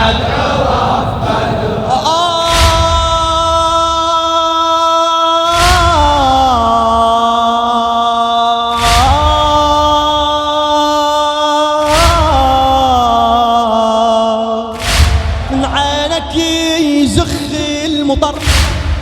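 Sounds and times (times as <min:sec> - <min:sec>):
wordless vocal chorus: 0:00.0 - 0:19.0
chest striking thumps: 0:02.4 - 0:03.7, 0:14.8 - 0:15.9, 0:18.4 - 0:19.0.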